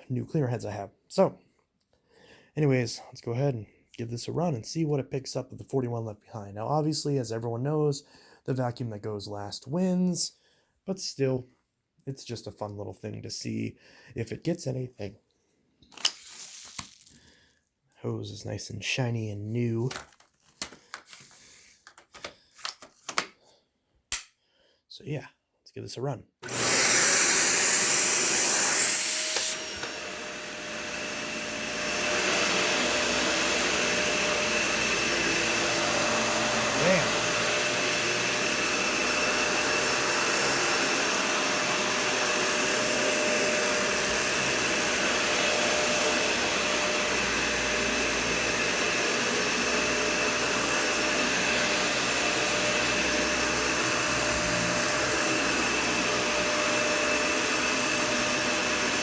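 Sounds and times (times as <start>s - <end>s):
vacuum cleaner whining: 26.4s - 59.0s.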